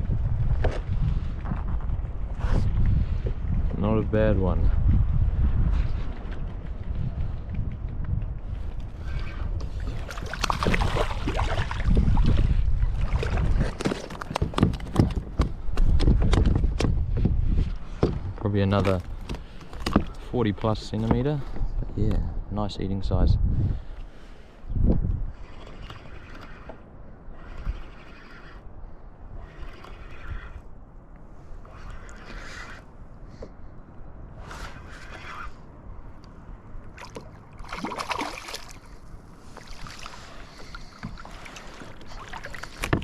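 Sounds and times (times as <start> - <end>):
water sloshing and splashing: 8.6 - 15.6, 18.8 - 21.6, 25.2 - 28.7, 36.7 - 43.0.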